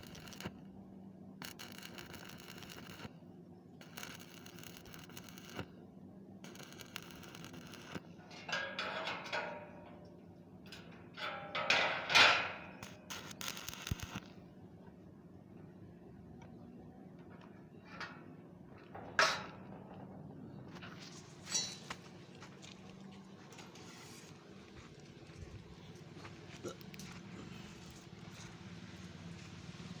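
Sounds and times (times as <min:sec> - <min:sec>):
arc welding crackling: 0:00.0 - 0:00.7, 0:01.4 - 0:03.2, 0:03.8 - 0:05.7, 0:06.4 - 0:09.5, 0:11.2 - 0:14.4.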